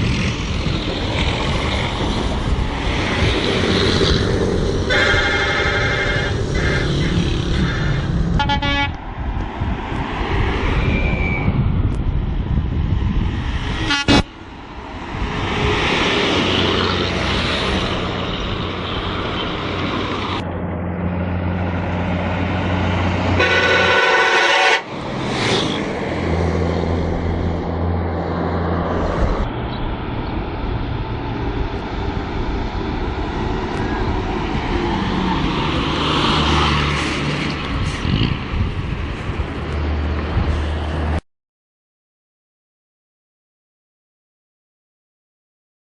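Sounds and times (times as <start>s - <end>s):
diesel engine running: 0.0s - 8.9s
bus horns tooting: 4.8s - 9.0s, 13.8s - 14.3s, 23.4s - 24.9s.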